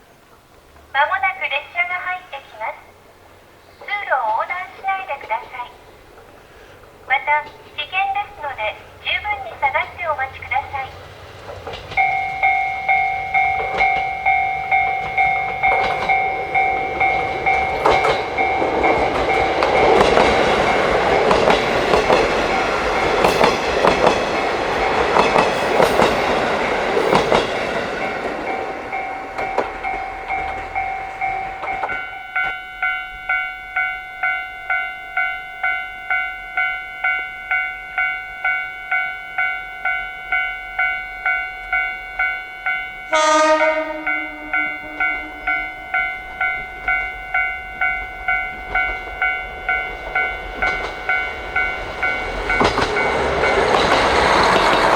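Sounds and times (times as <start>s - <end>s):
train wheels clattering over joints: 5.2s - 32.6s, 43.5s - 54.9s
level crossing bell ringing: 12.0s - 54.9s.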